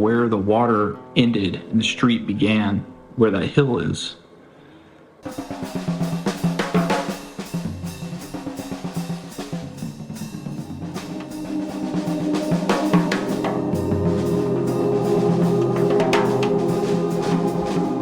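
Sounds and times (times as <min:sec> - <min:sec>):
drum-kit beat: 0:05.2 - 0:18.0
sustained low tones: 0:10.4 - 0:18.0.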